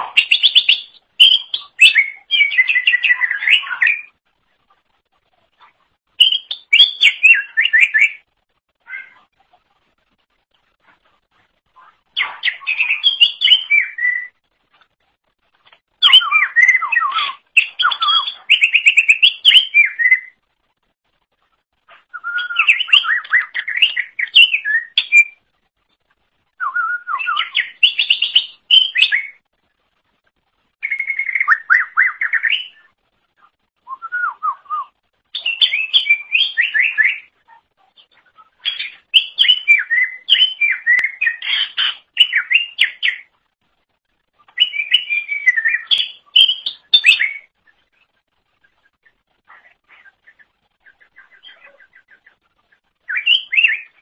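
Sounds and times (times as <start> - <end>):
bird singing whistled phrases: 0.1 - 4.2, 6.2 - 8.2, 12.2 - 14.4, 16.0 - 20.4, 22.1 - 25.4, 26.6 - 29.4, 30.8 - 32.9, 33.8 - 37.3, 38.7 - 43.3, 44.6 - 47.5, 53.1 - 54.0.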